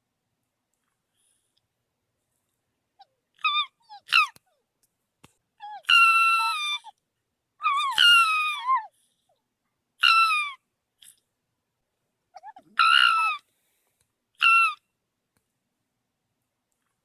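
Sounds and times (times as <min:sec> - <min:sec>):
fox yelping and crying: 0:03.0 - 0:04.6, 0:05.6 - 0:07.0, 0:07.6 - 0:09.0, 0:10.0 - 0:11.2, 0:12.4 - 0:13.5, 0:14.4 - 0:14.8.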